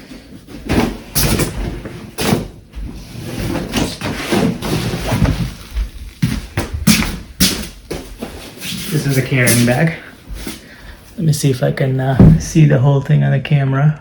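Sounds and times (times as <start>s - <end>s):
bag rustling and swishing: 2.9s - 11.2s.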